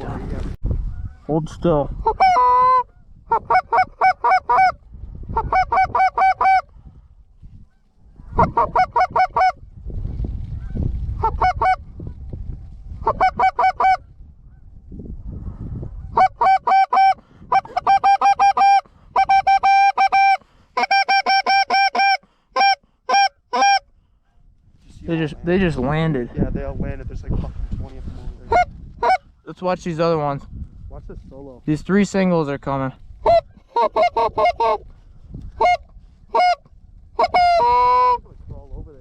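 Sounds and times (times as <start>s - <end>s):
goose call honks and clucks: 2.0s - 6.7s, 7.7s - 9.6s, 10.6s - 11.9s, 13.0s - 14.6s, 16.0s - 23.9s, 28.4s - 29.3s, 33.2s - 34.9s, 35.5s - 38.3s.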